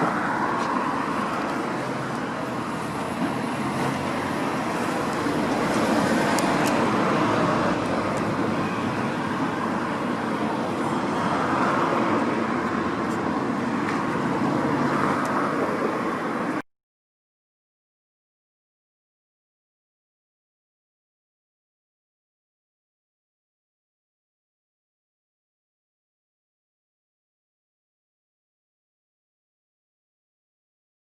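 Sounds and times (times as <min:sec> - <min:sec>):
vehicles passing: 0:00.0 - 0:16.6
road traffic noise: 0:00.0 - 0:16.7.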